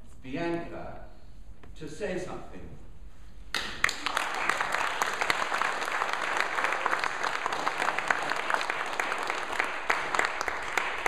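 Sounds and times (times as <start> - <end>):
audience applauding: 3.6 - 11.0.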